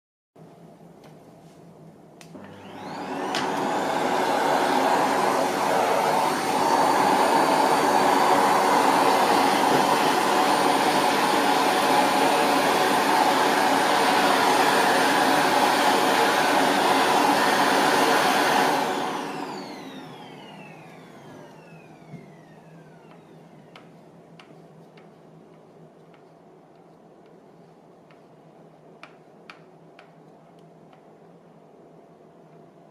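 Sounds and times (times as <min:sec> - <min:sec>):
vacuum cleaner motor whine: 0:02.3 - 0:24.0.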